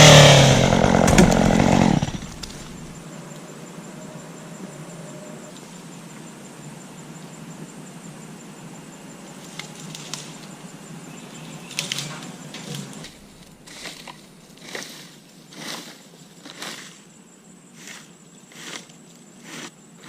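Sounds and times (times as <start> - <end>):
dry pine branches crunching: 0.0 - 3.0.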